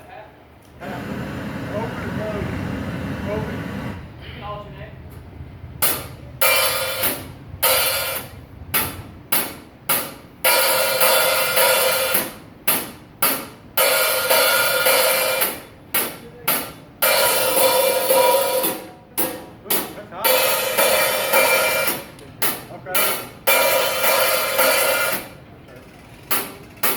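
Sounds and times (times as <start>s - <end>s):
cymbals being struck: 5.8s - 25.4s.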